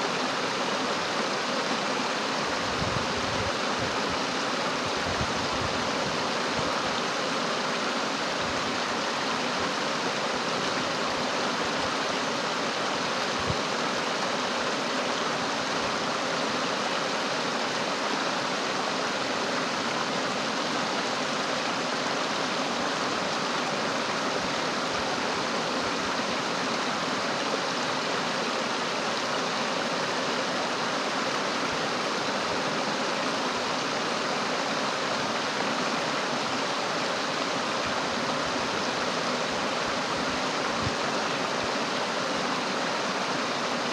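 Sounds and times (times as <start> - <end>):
fast-flowing water rushing: 0.0 - 43.9.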